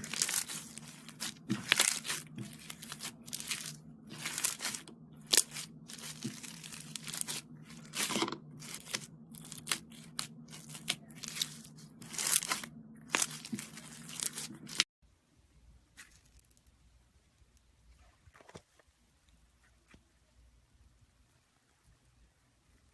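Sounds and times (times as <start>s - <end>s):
foam slime crackling: 0.0s - 14.9s.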